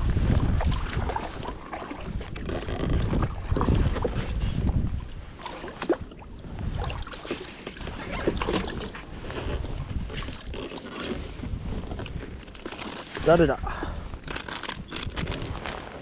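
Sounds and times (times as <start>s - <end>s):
wind buffeting microphone: 0.0s - 7.2s, 7.8s - 10.6s, 11.2s - 12.4s
water sounds: 0.0s - 15.3s.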